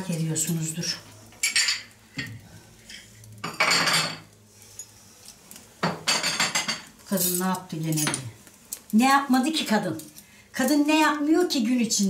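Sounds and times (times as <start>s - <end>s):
dishes and cutlery clattering: 1.4s - 4.3s, 5.8s - 7.4s.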